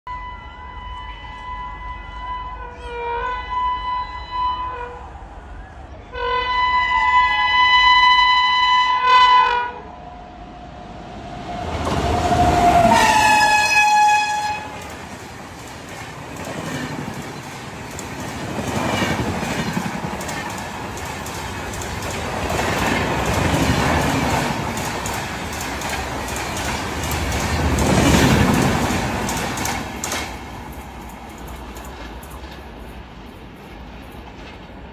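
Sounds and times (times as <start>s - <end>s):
shrill locomotive horn: 0.1s - 5.2s, 6.1s - 10.4s, 11.9s - 15.1s
train rumble and wheel clatter: 0.2s - 34.9s.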